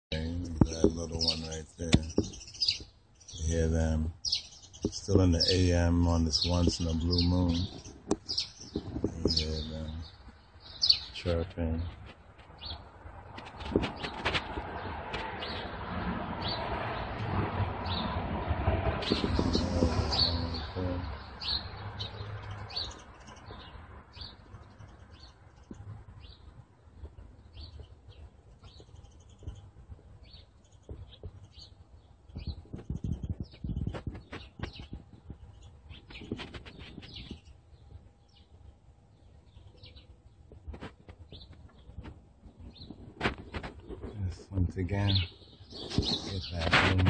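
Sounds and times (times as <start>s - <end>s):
small birds chirping: 0.1s - 18.2s, 19.0s - 47.0s
low rumbling noise: 8.8s - 24.9s.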